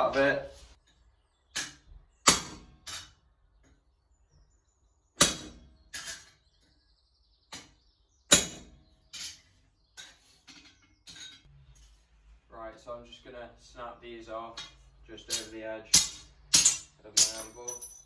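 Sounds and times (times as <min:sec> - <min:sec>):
hammer striking chisel on anvil: 0:01.6 - 0:03.2, 0:05.2 - 0:06.2, 0:14.6 - 0:18.0.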